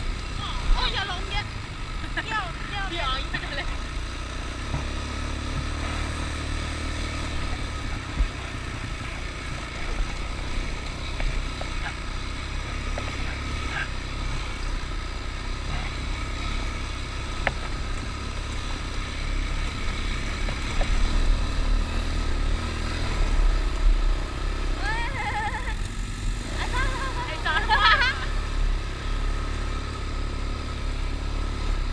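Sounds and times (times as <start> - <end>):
vehicle engine running: 0.0 - 31.9.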